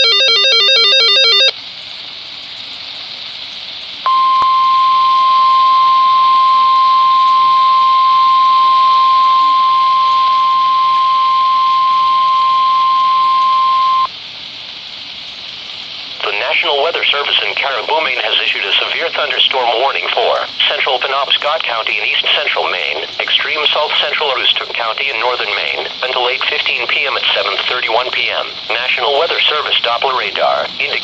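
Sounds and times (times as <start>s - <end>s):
digital header tones: 0.0s - 1.5s, 4.1s - 14.1s
steady warning alert tone: 0.0s - 1.5s, 4.1s - 14.1s
radio hiss: 4.1s - 14.1s, 16.1s - 31.0s.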